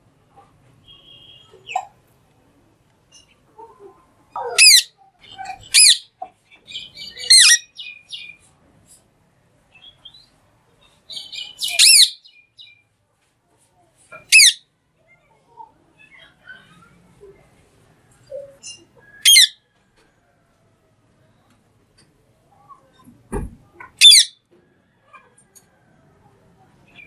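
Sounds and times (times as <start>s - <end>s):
parrot shrill calls: 4.5s - 4.9s, 5.5s - 6.1s, 7.0s - 7.9s, 11.3s - 12.2s, 14.3s - 14.6s, 19.2s - 19.6s, 24.0s - 24.4s.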